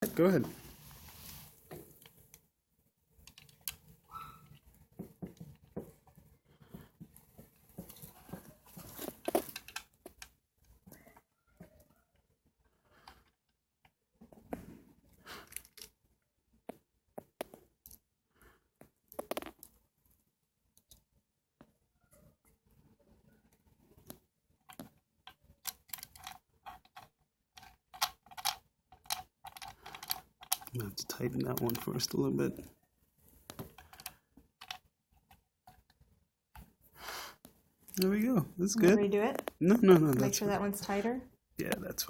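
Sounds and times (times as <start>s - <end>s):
small metal parts clicking: 9.2s - 10.3s, 24.7s - 32.1s, 33.7s - 34.9s.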